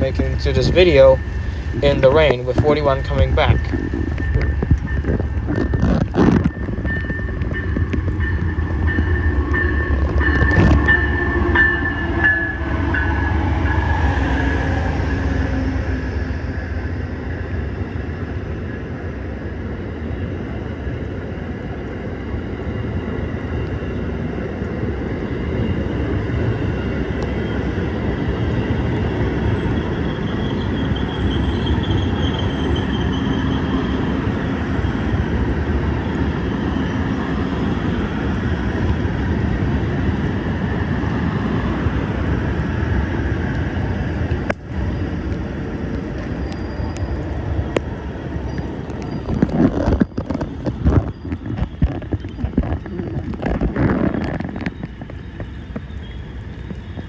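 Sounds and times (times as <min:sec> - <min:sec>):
rain hiss: 0:00.0 - 0:05.4
train rumbling past: 0:00.0 - 0:57.0.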